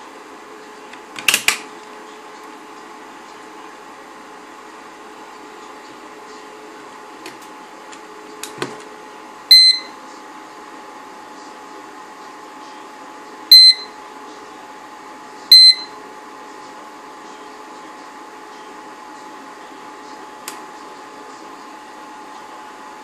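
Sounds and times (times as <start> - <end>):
steady electrical hum: 0.0 - 23.0
high-pitched electronic beeps: 13.5 - 13.9.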